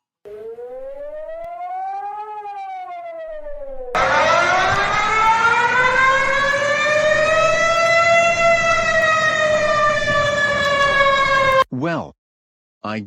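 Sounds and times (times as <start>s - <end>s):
warning siren wailing: 0.3s - 11.7s.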